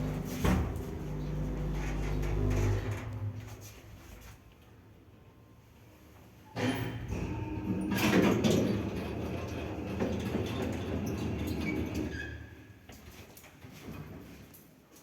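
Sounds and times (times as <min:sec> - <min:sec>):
elevator humming and rattling: 0:00.0 - 0:03.6, 0:07.0 - 0:12.1.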